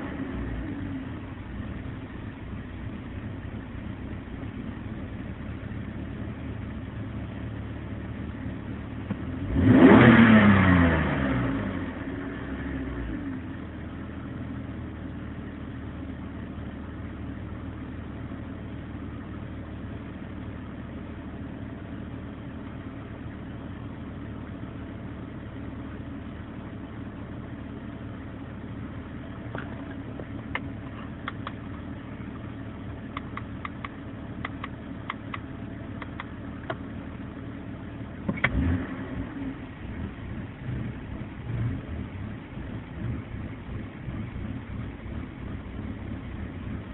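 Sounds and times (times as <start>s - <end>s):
engine sharp pops: 9.0s - 9.3s, 29.5s - 31.9s, 32.9s - 36.9s, 38.2s - 38.8s.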